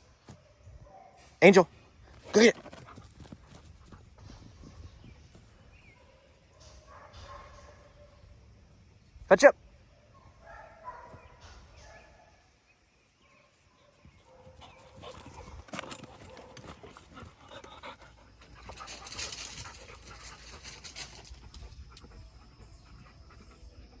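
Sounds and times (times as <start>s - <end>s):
dog panting: 14.3s - 24.0s.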